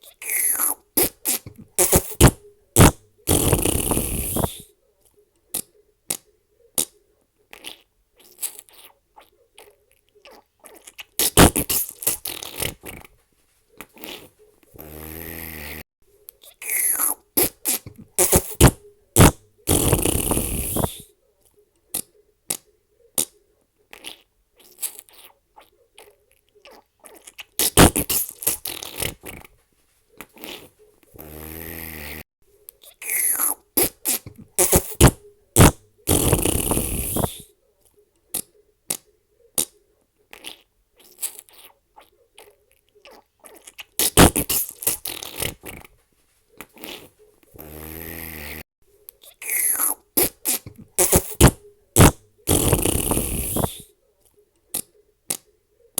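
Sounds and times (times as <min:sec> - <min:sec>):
farts: 0:00.0 - 0:04.6, 0:07.5 - 0:09.0, 0:10.3 - 0:13.1, 0:13.9 - 0:15.8, 0:16.6 - 0:21.0, 0:23.9 - 0:25.4, 0:26.7 - 0:29.5, 0:30.3 - 0:32.2, 0:32.8 - 0:37.4, 0:40.3 - 0:41.8, 0:43.1 - 0:45.9, 0:46.7 - 0:48.6, 0:49.4 - 0:53.9
buzzy pitched fart: 0:00.2 - 0:04.6, 0:11.2 - 0:13.1, 0:14.0 - 0:15.8, 0:16.6 - 0:21.0, 0:27.6 - 0:29.5, 0:30.4 - 0:32.2, 0:33.0 - 0:37.4, 0:44.0 - 0:45.9, 0:46.8 - 0:48.6, 0:49.4 - 0:53.8.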